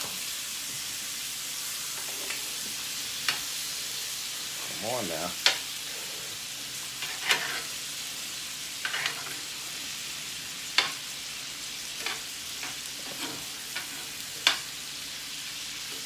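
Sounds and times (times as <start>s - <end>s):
steaks sizzling in a pan: 0.0s - 16.0s
utensil scraping a pan: 7.0s - 8.0s, 8.8s - 9.6s, 11.9s - 14.7s.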